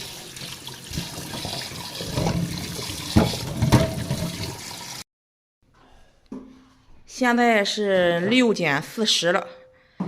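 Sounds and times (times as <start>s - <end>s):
tap water running: 0.0s - 5.0s.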